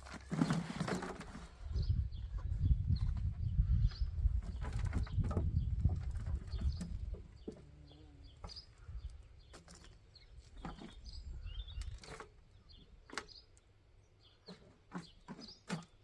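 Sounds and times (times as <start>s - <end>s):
hands rummaging through compost: 0.0s - 1.8s.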